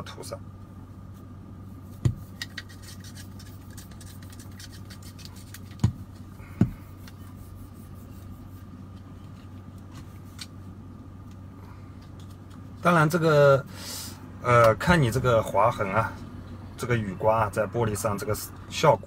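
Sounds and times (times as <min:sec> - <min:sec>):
steady hum: 0:00.0 - 0:19.0
scratchy handling ticks: 0:02.3 - 0:06.2.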